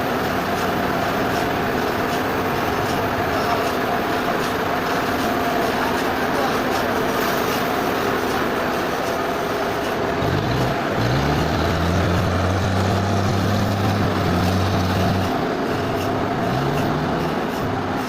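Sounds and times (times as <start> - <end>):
steady machinery noise: 0.0 - 18.0
low motor hum: 10.2 - 18.0.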